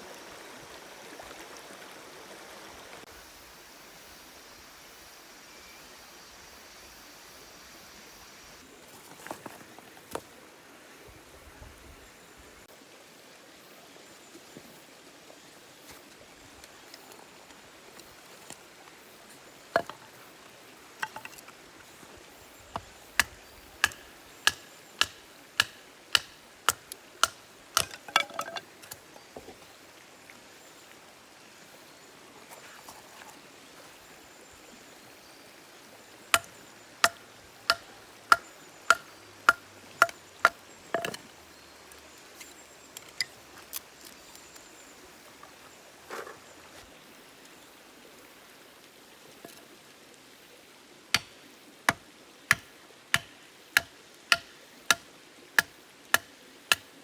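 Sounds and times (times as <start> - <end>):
knife chopping: 22.8 - 28.0, 53.2 - 55.0.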